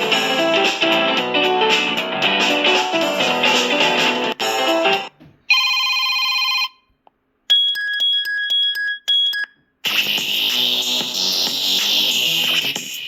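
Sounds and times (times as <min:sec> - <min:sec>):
short electronic beeps: 0:07.5 - 0:09.6.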